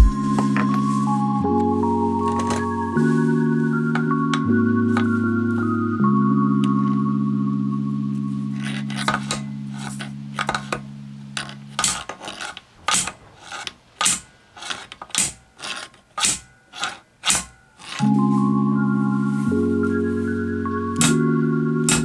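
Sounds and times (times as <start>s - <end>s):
background music: 0.0s - 12.0s, 17.9s - 22.0s
metal clamp clicking and scraping: 11.4s - 18.1s.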